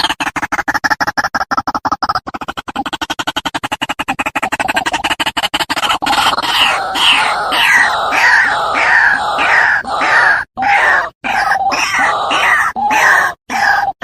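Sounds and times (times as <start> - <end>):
waterhen calling harsh notes: 6.1 - 14.0.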